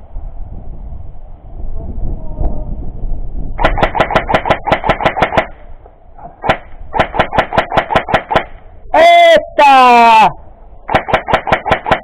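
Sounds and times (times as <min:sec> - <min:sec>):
airsoft gun rapid firing: 0:03.6 - 0:05.6, 0:06.4 - 0:08.6, 0:10.9 - 0:12.0.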